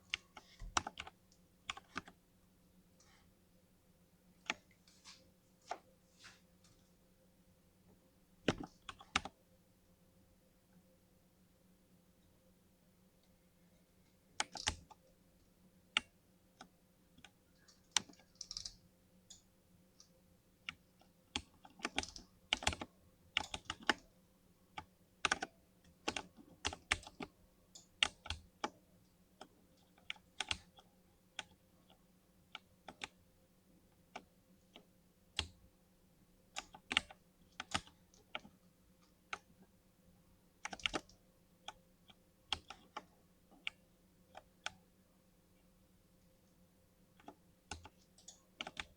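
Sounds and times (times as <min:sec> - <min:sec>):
mechanical keyboard typing: 0:00.1 - 0:02.2, 0:14.4 - 0:15.0, 0:16.0 - 0:18.8, 0:21.4 - 0:24.0, 0:24.8 - 0:28.8, 0:29.4 - 0:30.8, 0:36.6 - 0:38.5, 0:40.6 - 0:41.8, 0:47.2 - 0:48.9.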